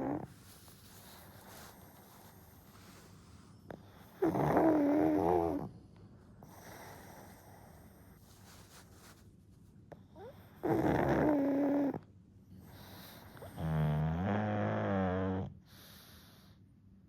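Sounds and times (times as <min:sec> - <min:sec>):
dog snoring: 0:00.0 - 0:03.0, 0:03.7 - 0:05.8, 0:06.4 - 0:08.2, 0:10.0 - 0:12.0, 0:12.6 - 0:16.6.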